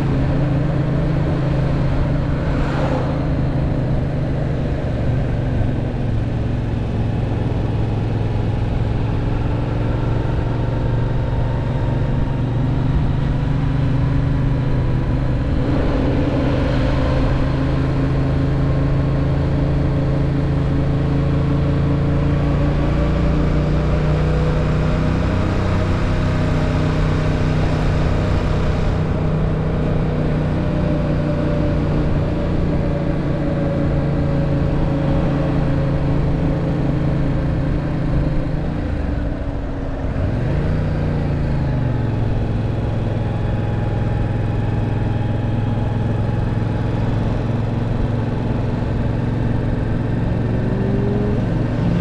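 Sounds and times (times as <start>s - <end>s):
motorcycle engine cruising: 0.0s - 52.0s
wind rushing: 1.6s - 4.5s.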